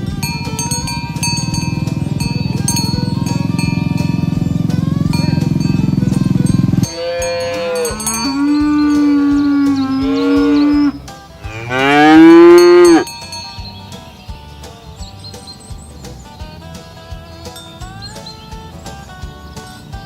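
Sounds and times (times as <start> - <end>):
cattle mooing: 6.4 - 13.0.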